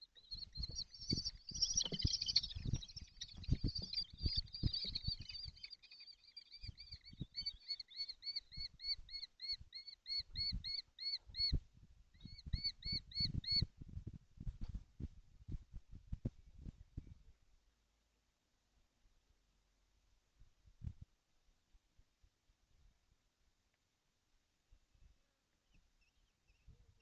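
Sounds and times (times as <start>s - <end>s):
young kestrels calling: 0.0s - 11.5s, 12.2s - 13.6s, 25.6s - 27.0s.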